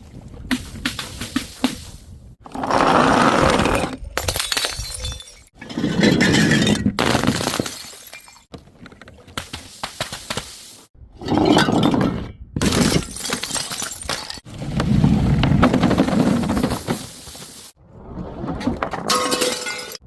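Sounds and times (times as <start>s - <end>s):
glass shards clattering: 4.2s - 6.8s, 19.1s - 20.0s
glass bottles smashing: 4.2s - 8.5s, 12.7s - 14.4s, 19.0s - 20.0s.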